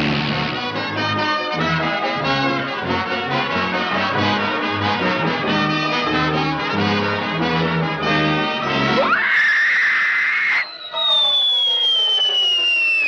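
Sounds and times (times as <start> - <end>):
orchestral cartoon music with brass: 0.0 - 9.1.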